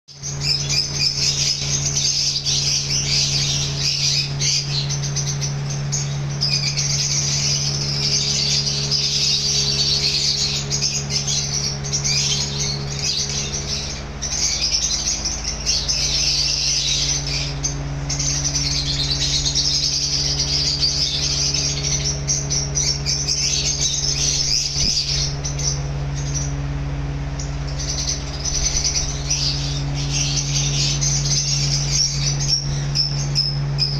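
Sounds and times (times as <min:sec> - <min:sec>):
birds chirping: 0:00.1 - 0:33.9
low hum: 0:00.2 - 0:33.9.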